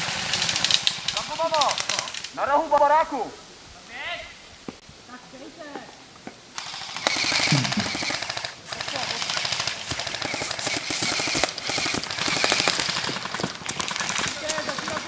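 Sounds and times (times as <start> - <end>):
airsoft guns firing full auto: 0.0 - 2.4, 6.6 - 15.0.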